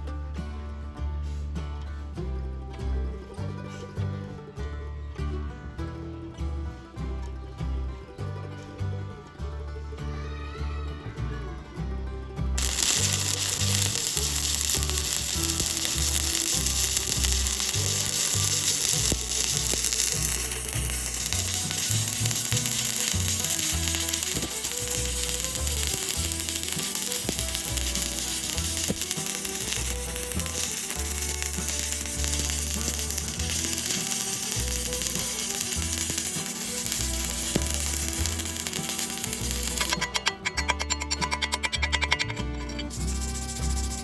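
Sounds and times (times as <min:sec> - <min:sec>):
background music: 0:00.0 - 0:44.0
welding arc crackling: 0:12.6 - 0:44.0.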